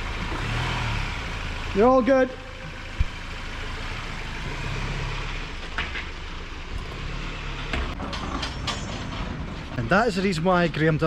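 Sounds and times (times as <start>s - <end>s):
pickup truck engine at low revs: 0.0s - 8.0s.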